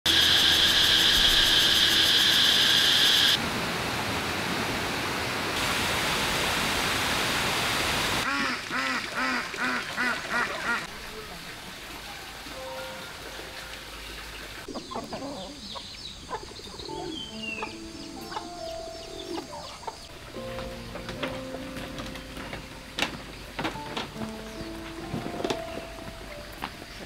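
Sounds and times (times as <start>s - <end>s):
high-pitched buzz: 0.1s - 3.4s
steady hiss: 0.1s - 3.4s
ducks quacking: 8.2s - 10.9s.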